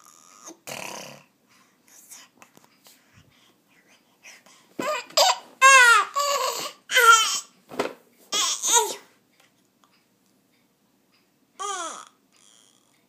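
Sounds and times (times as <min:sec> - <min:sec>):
baby crying loudly: 0:04.8 - 0:07.5.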